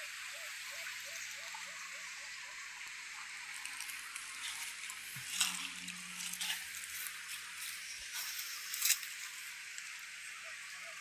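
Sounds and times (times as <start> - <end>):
small patters and ticks: 2.6 - 10.7.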